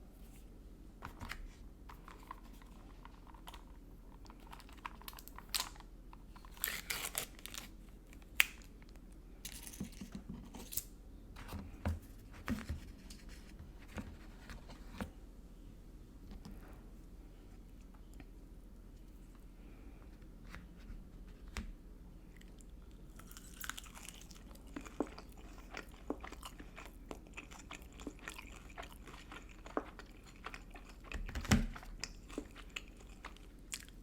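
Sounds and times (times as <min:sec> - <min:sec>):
food packaging crinkling: 0:01.9 - 0:08.7.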